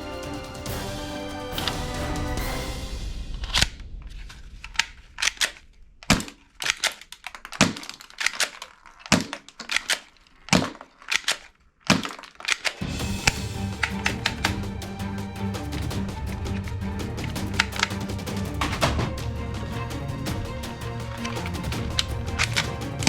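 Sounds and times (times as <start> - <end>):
small clicks: 4.6 - 12.8.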